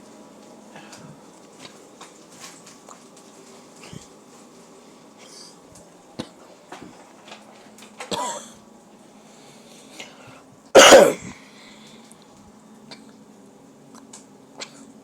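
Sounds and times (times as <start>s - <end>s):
person coughing: 8.1s - 8.6s, 10.8s - 11.4s
person clearing throat: 10.8s - 11.4s.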